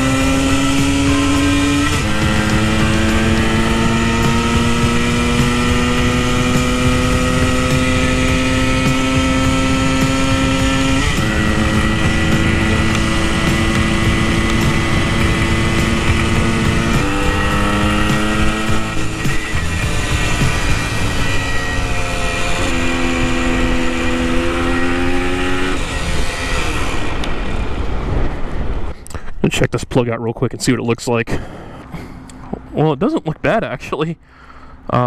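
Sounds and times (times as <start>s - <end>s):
two-stroke motorcycle engine under load: 0.0s - 27.9s.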